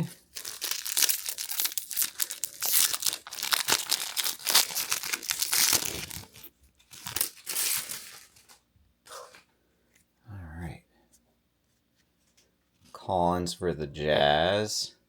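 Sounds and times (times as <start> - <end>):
wrapper tearing and crinkling: 0.0 - 8.6.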